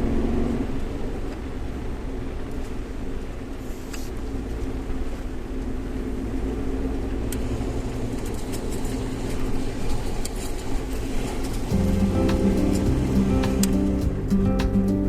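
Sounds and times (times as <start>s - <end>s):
car engine running: 11.7s - 15.0s.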